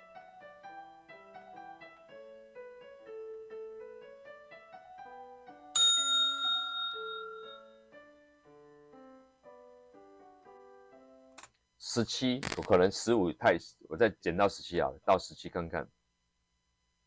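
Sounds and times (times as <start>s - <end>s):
soft piano music: 0.0s - 11.4s
bell ding: 5.8s - 7.8s.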